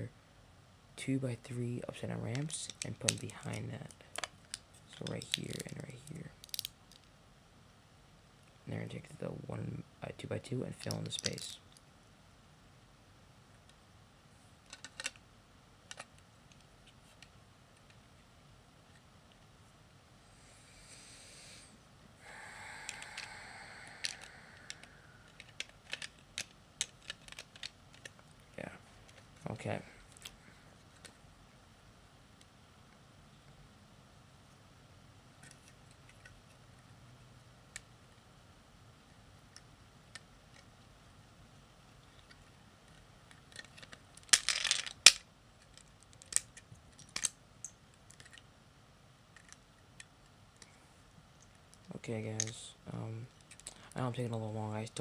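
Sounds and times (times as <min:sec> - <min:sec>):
low steady hum: 0:00.0 - 0:55.0
plastic bricks clicking: 0:14.7 - 0:15.2, 0:24.0 - 0:28.2, 0:43.3 - 0:47.4, 0:48.1 - 0:48.4.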